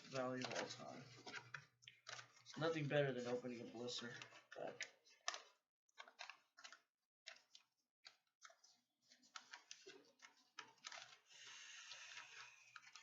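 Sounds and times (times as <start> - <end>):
packaging rustling: 0.0 - 13.0
blister pack crackling: 8.4 - 13.0.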